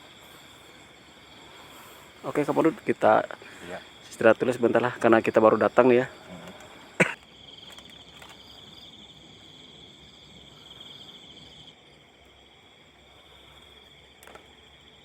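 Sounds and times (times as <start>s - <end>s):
crickets chirring: 0.0s - 15.0s.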